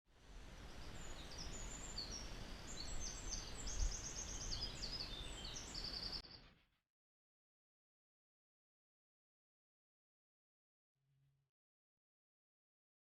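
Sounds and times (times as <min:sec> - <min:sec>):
small birds singing: 0:00.4 - 0:06.6.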